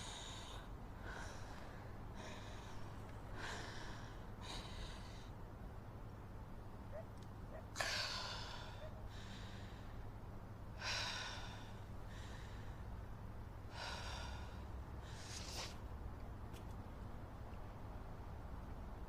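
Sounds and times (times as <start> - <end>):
person breathing heavily: 0.0 - 5.4, 7.8 - 10.1, 10.7 - 13.0, 13.6 - 15.8.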